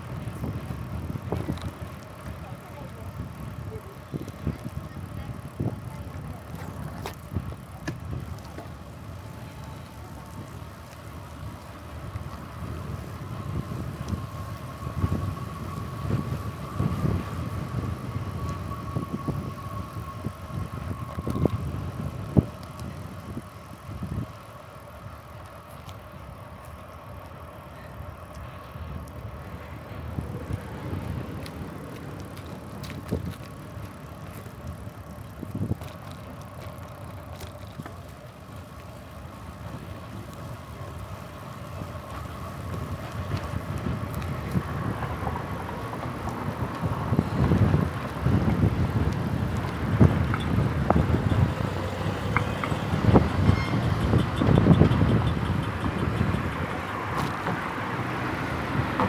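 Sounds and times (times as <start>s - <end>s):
bicycle knocks and rattles: 0.0s - 2.4s, 3.8s - 9.0s, 30.2s - 39.0s, 42.1s - 59.0s
wind buffeting microphone: 0.0s - 25.3s, 28.3s - 59.0s
bicycle tyres rolling: 0.0s - 59.0s.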